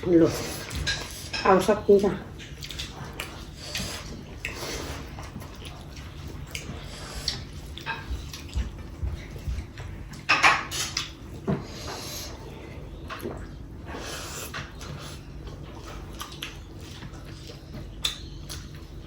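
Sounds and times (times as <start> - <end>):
chewing and wet mouth sounds: 0.0 - 19.0.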